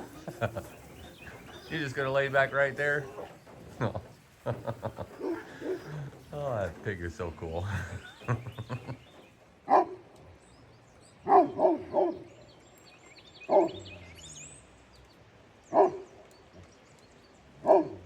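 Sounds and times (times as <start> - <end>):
dog barking: 4.6 - 6.1, 9.7 - 10.0, 11.3 - 12.3, 13.5 - 13.8, 15.8 - 16.1, 17.6 - 18.0.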